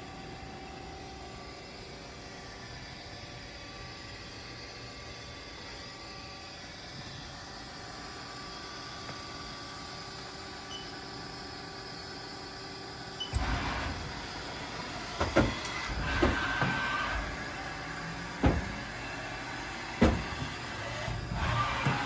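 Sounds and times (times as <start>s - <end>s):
machine motor noise: 13.2s - 22.0s
lathe humming: 13.4s - 22.0s
sharp machine clunks: 18.3s - 18.9s, 20.0s - 22.0s.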